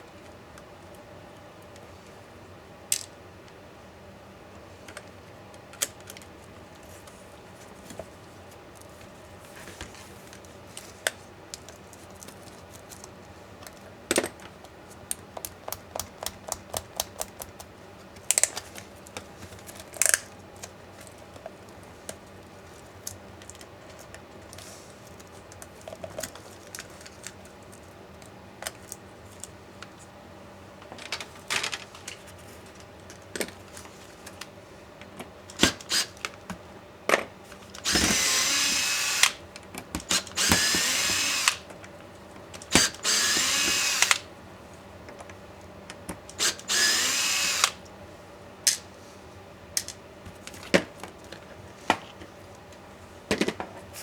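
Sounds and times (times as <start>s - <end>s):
laptop parts clicking and tapping: 15.1s - 18.6s.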